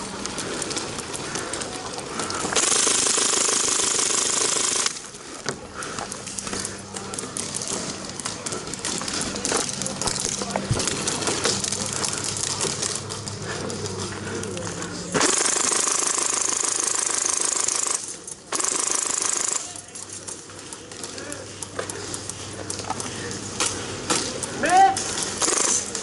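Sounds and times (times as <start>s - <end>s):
airsoft minigun firing: 2.5s - 5.0s, 15.2s - 19.8s, 25.4s - 26.0s.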